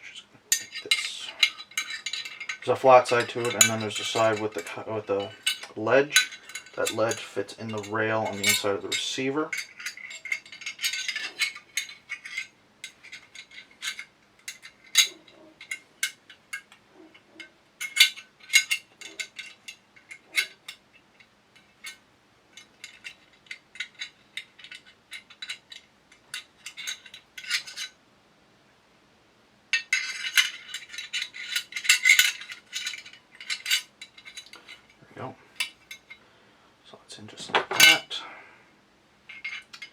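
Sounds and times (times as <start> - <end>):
metal scraping: 0.0 - 20.8
metal gun parts clicking: 0.0 - 27.9, 29.8 - 35.0, 39.3 - 39.9.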